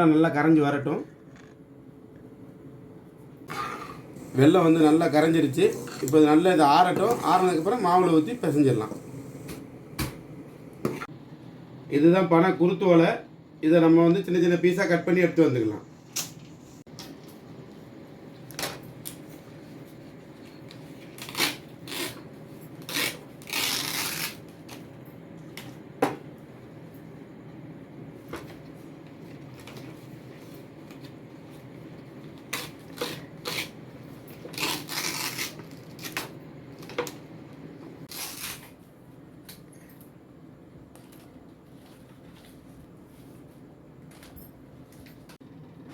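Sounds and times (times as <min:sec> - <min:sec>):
palm leaf cutting and rustling: 0:22.8 - 0:24.8, 0:32.4 - 0:36.3, 0:38.1 - 0:38.8.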